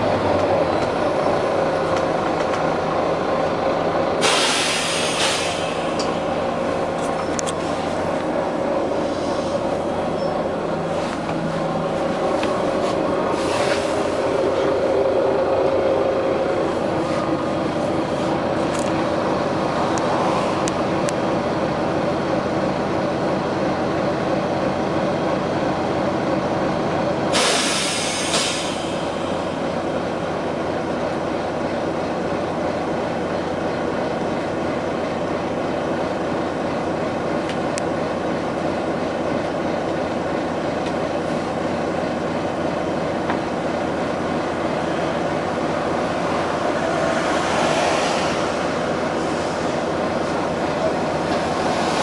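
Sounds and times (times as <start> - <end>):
diesel bus engine running: 0.0 - 52.0
air hiss: 4.2 - 6.0, 27.3 - 29.2.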